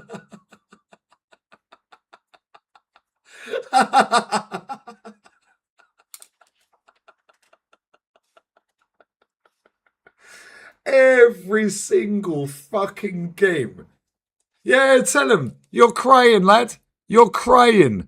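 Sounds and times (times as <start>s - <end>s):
man laughing: 0.0s - 10.4s.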